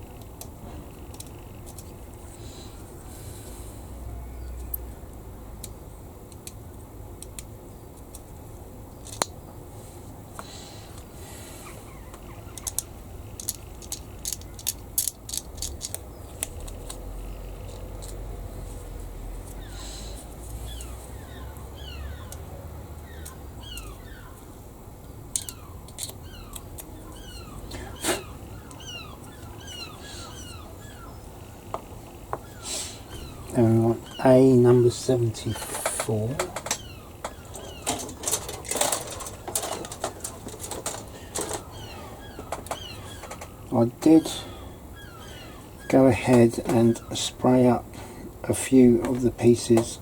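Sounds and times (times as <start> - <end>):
plastic parts clicking and rustling: 0.2 - 2.1, 9.0 - 9.4, 12.5 - 18.3, 25.3 - 26.9, 35.5 - 43.6
bird chirping: 11.4 - 15.0, 19.5 - 47.8
sharp clicks: 22.2 - 24.0, 25.3 - 26.9.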